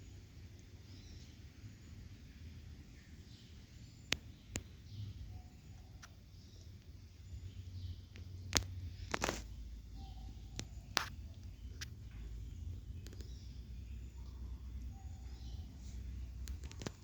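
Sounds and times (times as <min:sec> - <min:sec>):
kittens purring: 0:04.4 - 0:17.0.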